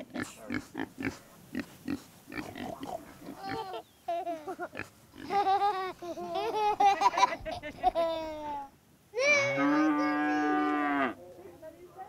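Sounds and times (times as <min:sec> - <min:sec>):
pigs grunting and squealing: 0:00.1 - 0:03.8.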